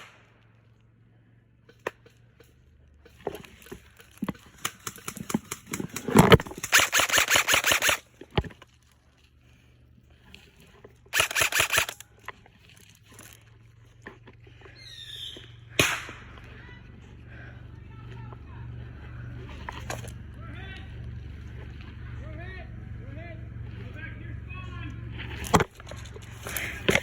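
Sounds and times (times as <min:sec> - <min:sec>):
airsoft guns firing: 0:00.0 - 0:00.4, 0:04.4 - 0:08.1, 0:11.1 - 0:12.0, 0:15.7 - 0:16.6.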